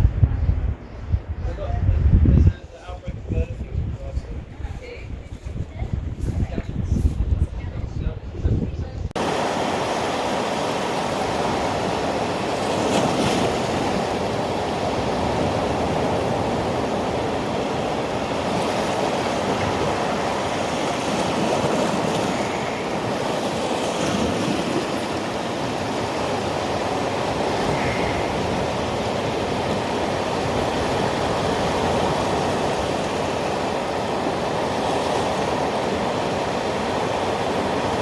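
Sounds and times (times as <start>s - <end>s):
sea waves washing onto beach: 9.2s - 38.0s.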